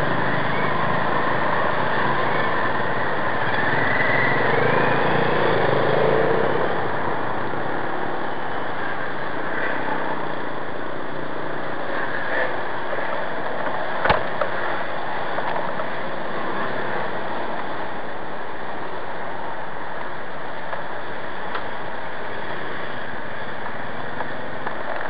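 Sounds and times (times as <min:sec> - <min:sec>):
street traffic noise: 0:00.0 - 0:25.0.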